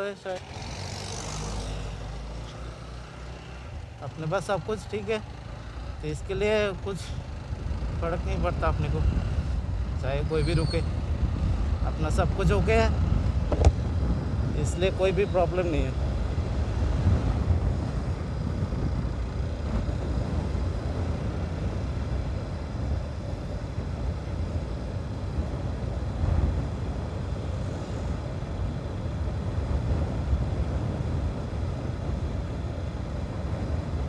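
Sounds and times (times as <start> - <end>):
motorcycle engine running: 0.0 - 34.0
wind buffeting a microphone: 7.2 - 34.0.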